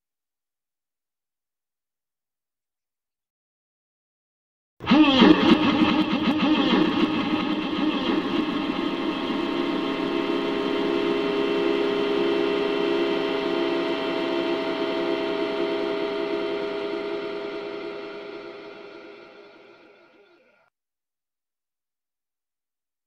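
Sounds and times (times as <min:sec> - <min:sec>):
dense drone of stacked keyboard tones: 0:05.6 - 0:20.0.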